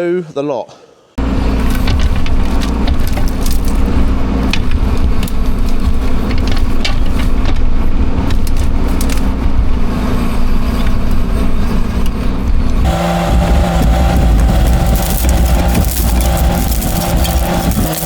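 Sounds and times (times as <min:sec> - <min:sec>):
engine running: 0:01.2 - 0:18.0
knocks and rattles: 0:01.6 - 0:09.3, 0:12.8 - 0:18.0.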